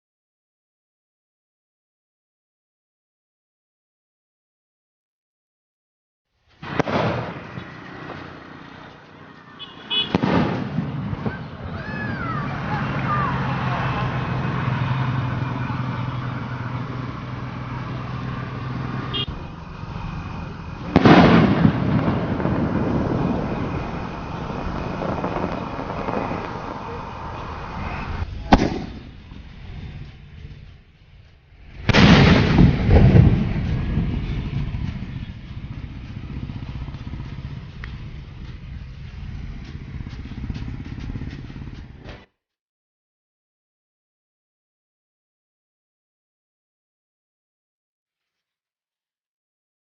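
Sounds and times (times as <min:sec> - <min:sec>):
sharp firework pop: 0:06.6 - 0:07.6, 0:10.1 - 0:11.4, 0:28.5 - 0:29.1
firework bursts: 0:06.6 - 0:08.9, 0:09.9 - 0:12.2, 0:20.0 - 0:29.9
firework hiss and crackle: 0:19.3 - 0:30.3.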